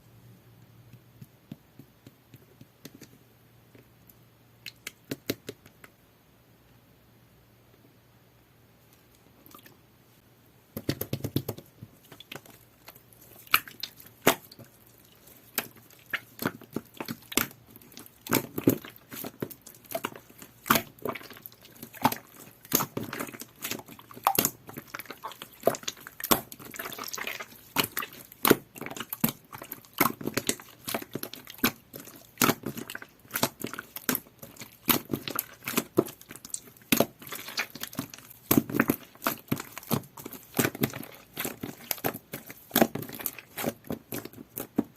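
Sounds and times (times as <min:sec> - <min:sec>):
slime squishing with sticky pops: 0:10.7 - 0:44.9.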